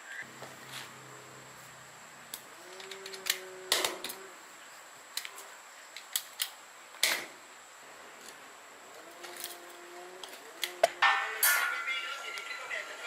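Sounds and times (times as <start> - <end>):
faint high whine: 6.6 - 13.0.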